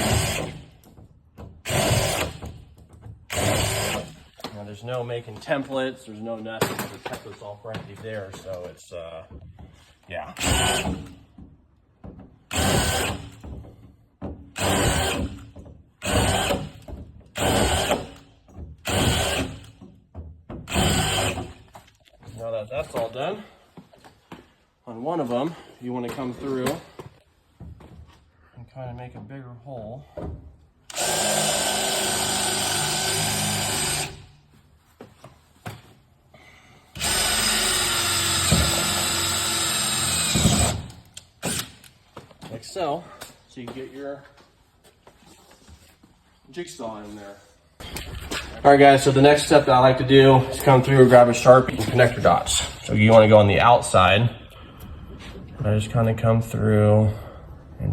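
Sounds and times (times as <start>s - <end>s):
power drill drilling sheet metal: 0.0s - 0.7s, 1.6s - 2.4s, 3.3s - 4.3s, 10.4s - 11.0s, 12.5s - 13.3s, 14.6s - 15.4s, 16.0s - 16.8s, 17.4s - 18.2s, 18.8s - 19.6s, 20.7s - 21.6s, 30.9s - 34.3s, 37.0s - 41.8s.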